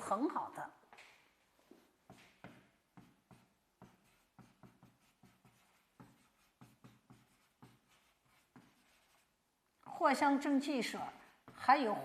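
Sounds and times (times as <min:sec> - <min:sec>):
pen scratching on paper: 0:02.1 - 0:09.3.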